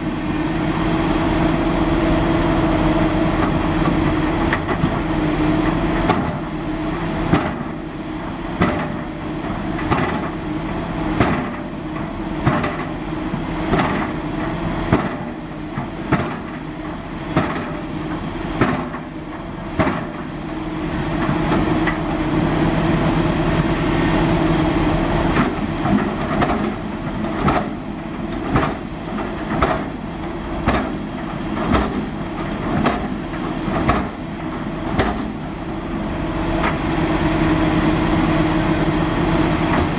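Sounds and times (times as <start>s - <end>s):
excavator diesel engine droning: 0.0s - 39.9s.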